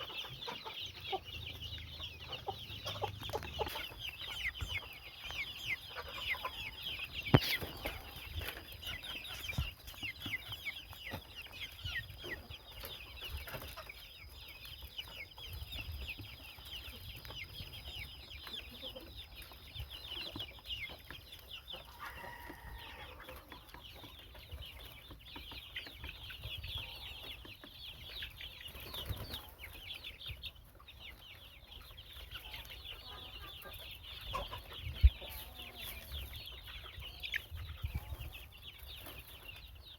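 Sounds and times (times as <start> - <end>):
chicks peeping: 0.0 - 39.9.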